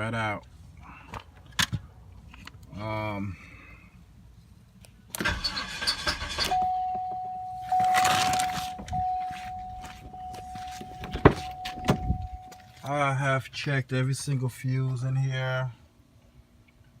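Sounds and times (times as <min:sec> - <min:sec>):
rustling and handling noise: 0:07.5 - 0:12.9.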